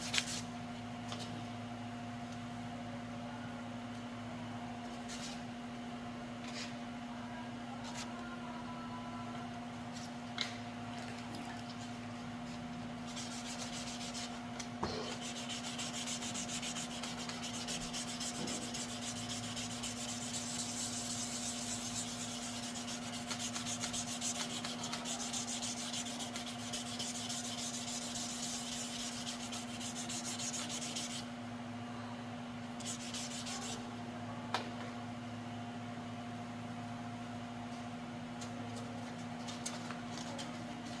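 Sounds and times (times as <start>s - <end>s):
electrical hum: 0.0s - 41.0s
sanding rasp: 13.1s - 14.4s, 15.1s - 31.2s, 32.8s - 33.8s.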